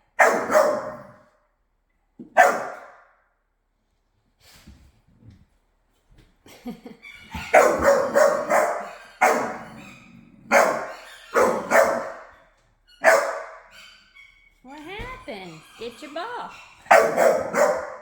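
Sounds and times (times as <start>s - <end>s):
dog barking: 0.1s - 1.3s, 2.3s - 3.1s, 7.4s - 12.3s, 13.0s - 13.9s, 15.4s - 18.0s.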